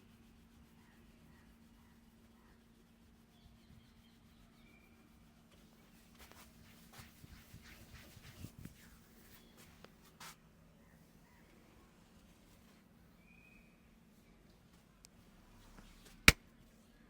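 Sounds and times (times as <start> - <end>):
hands rubbing hair: 5.7 - 10.4.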